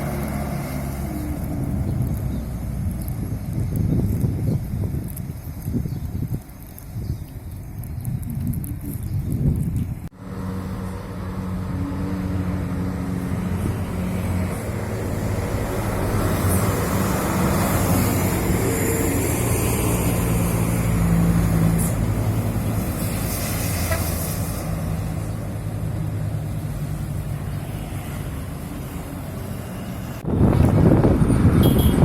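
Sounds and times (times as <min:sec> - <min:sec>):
bus engine passing: 0:00.0 - 0:05.5, 0:10.1 - 0:32.0
road traffic noise: 0:00.0 - 0:32.0.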